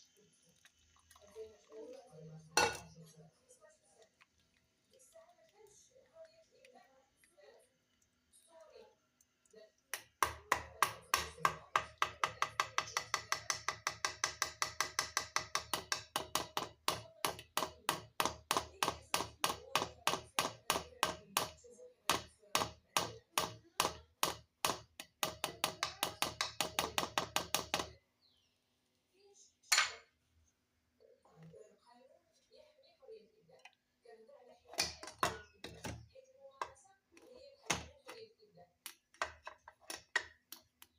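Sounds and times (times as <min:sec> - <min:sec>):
metal utensil knocking metal vessel: 0:02.6 - 0:03.0.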